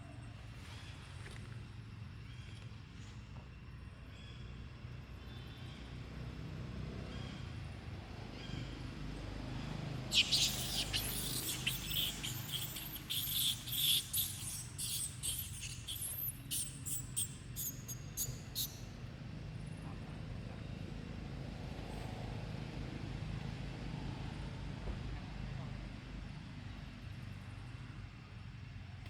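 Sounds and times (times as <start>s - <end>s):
baby monkey squeaking: 10.1s - 18.8s.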